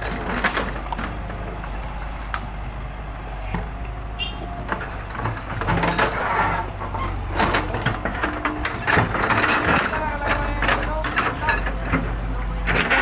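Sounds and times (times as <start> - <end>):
knocks and clatter: 0.0 - 1.8, 4.4 - 13.0
engine low drone: 0.0 - 13.0.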